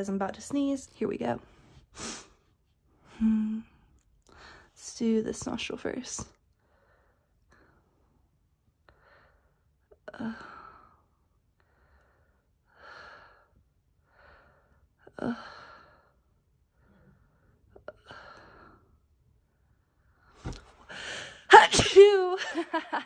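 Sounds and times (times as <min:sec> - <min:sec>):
woman gasping breaths: 0:20.8 - 0:21.5.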